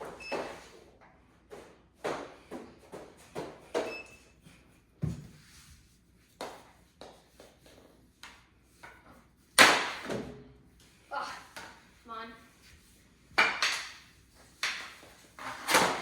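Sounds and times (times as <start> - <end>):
hockey sticks and ball clacking: 13.3 - 16.0.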